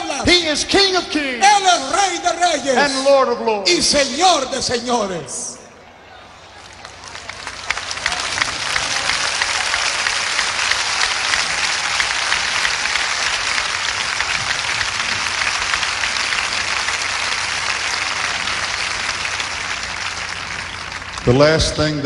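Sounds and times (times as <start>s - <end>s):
large audience applauding: 6.1s - 22.0s.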